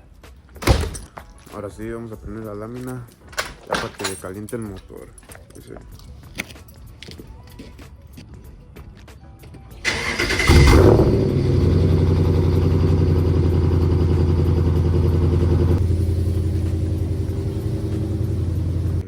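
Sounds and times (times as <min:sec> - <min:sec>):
engine revving and idling: 0:09.8 - 0:19.0
engine starter cranking: 0:09.8 - 0:19.0.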